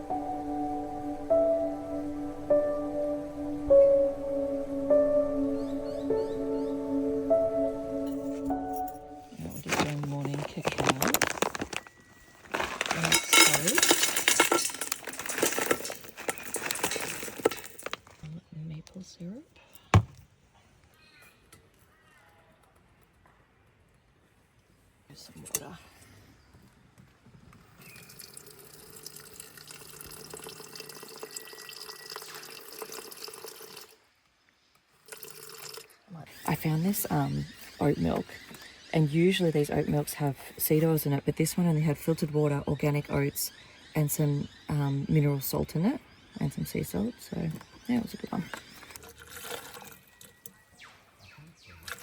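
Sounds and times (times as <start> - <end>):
utensils and containers clinking: 9.3 - 18.2
water pouring into container: 28.0 - 34.0, 35.0 - 35.9, 49.0 - 50.4.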